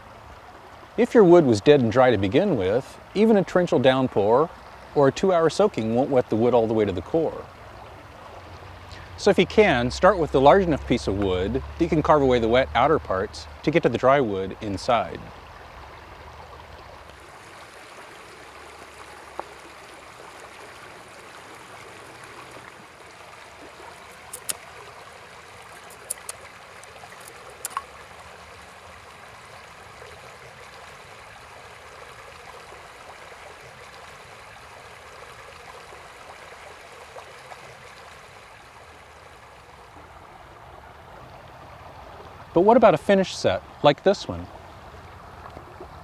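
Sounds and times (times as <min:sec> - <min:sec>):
stream running: 0:00.0 - 0:46.0.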